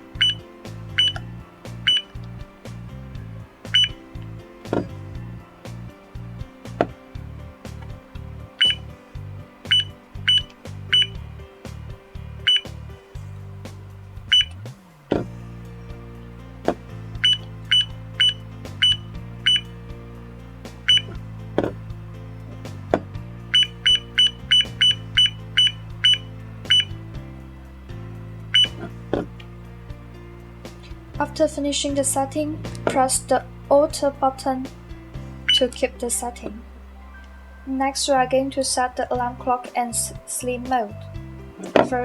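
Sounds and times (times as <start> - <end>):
background music: 0.0 - 42.0
high-pitched electronic beeps: 0.2 - 0.4, 9.7 - 11.2.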